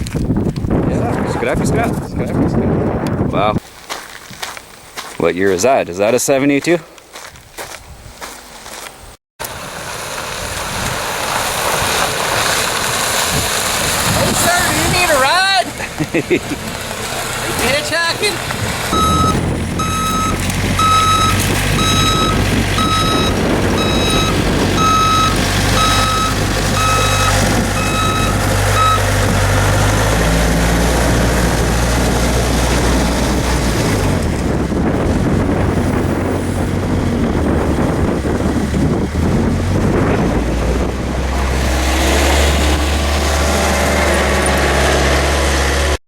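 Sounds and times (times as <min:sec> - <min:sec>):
vehicle engine humming: 0:09.4 - 0:46.0
vehicle warning beeper: 0:18.9 - 0:29.1.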